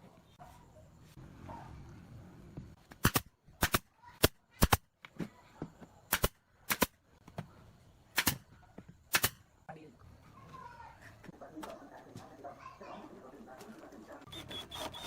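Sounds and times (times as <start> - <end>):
nails driven into wood: 2.8 - 4.8, 6.1 - 7.4, 8.1 - 9.5.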